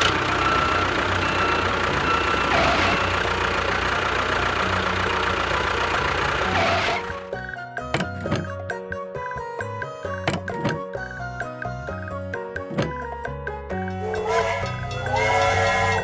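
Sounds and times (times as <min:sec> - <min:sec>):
vehicle engine running: 0:00.0 - 0:08.6, 0:14.0 - 0:16.0.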